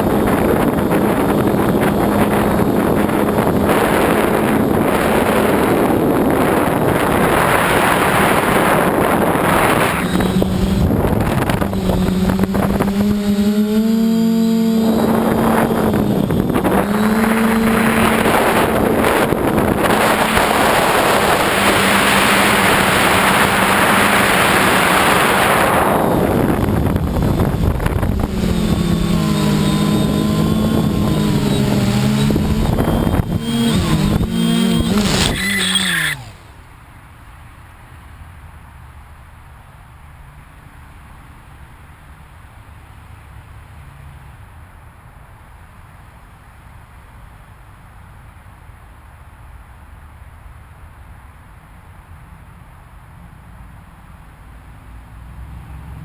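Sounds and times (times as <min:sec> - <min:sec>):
wind buffeting microphone: 0:00.0 - 0:36.4
drone motors humming: 0:00.0 - 0:36.7.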